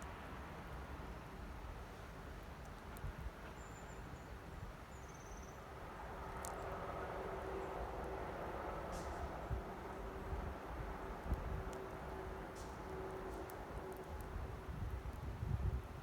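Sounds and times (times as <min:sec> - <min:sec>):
campfire hissing: 0:07.6 - 0:15.2.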